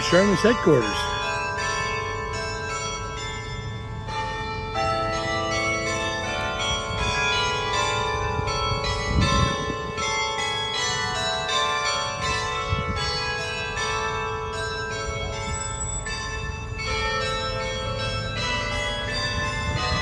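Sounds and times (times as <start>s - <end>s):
church bells ringing: 0.0s - 20.0s.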